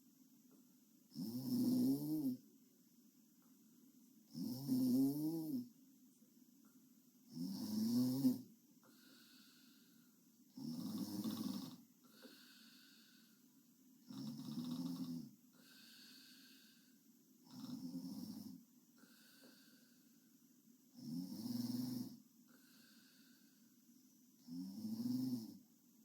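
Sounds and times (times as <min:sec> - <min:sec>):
woman snoring: 0:01.1 - 0:02.4, 0:04.3 - 0:05.7, 0:07.3 - 0:09.8, 0:10.5 - 0:13.3, 0:14.0 - 0:20.0, 0:21.0 - 0:23.4, 0:24.4 - 0:25.6.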